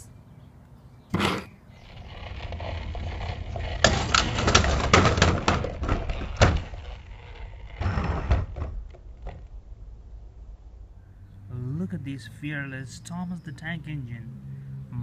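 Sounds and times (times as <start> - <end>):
toy scraping rattle: 1.1 - 7.8
toy vehicles knocking and clattering: 1.9 - 9.5.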